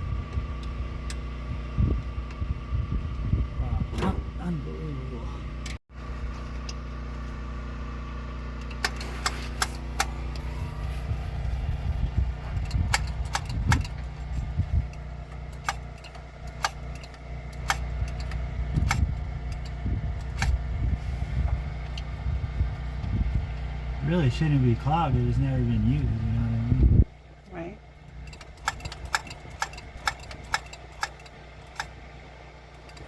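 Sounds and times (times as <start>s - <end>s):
steady low hum: 0.0s - 33.0s
metallic clicks of tools and parts: 8.6s - 10.4s, 12.6s - 14.3s, 14.9s - 20.6s, 28.1s - 32.0s, 32.8s - 33.0s.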